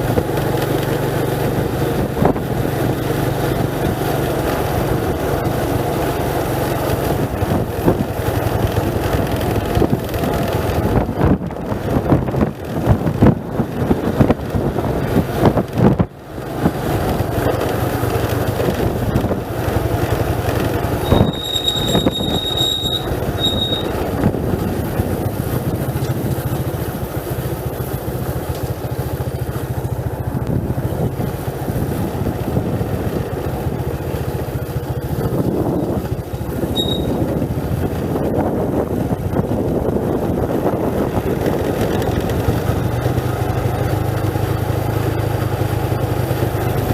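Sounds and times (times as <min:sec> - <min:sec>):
road and wind noise: 0:00.0 - 0:46.9
vehicle engine hum: 0:00.0 - 0:46.9
high-pitched squeal: 0:21.0 - 0:24.0, 0:36.7 - 0:37.3.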